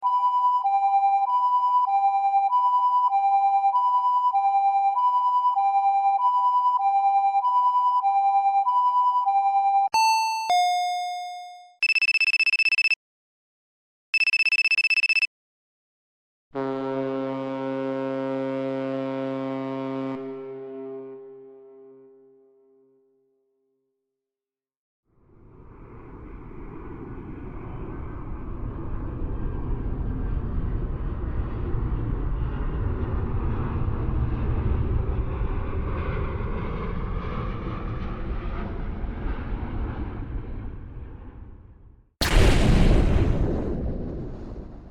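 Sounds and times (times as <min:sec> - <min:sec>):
telephone bell ringing: 0:08.7 - 0:13.0, 0:14.2 - 0:15.3
chime tone: 0:09.9 - 0:13.0
low steady horn note: 0:16.6 - 0:23.0.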